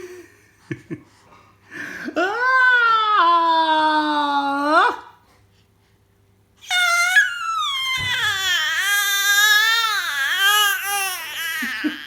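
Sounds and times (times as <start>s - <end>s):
baby wailing: 6.6s - 12.0s.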